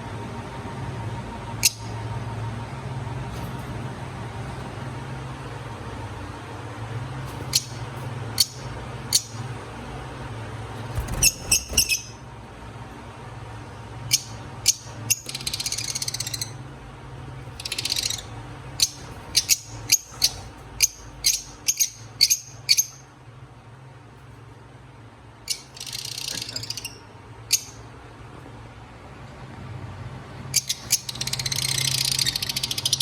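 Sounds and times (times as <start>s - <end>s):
lovebirds chirping: 1.6s - 2.0s, 7.2s - 9.9s, 10.6s - 12.3s, 14.0s - 16.7s, 17.5s - 23.1s, 25.4s - 27.9s, 30.5s - 33.0s.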